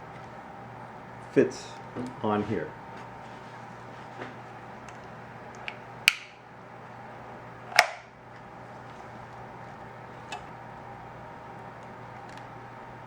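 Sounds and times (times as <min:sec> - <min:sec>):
faint steady hum: 0:00.0 - 0:13.0
parts snapping into place: 0:05.6 - 0:06.4, 0:07.7 - 0:08.1.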